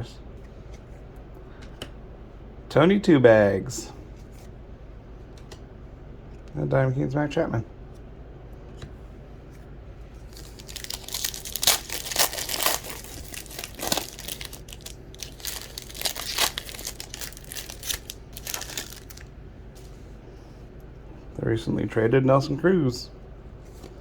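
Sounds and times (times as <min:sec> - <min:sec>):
foil wrapper tearing and crinkling: 0:10.3 - 0:19.3.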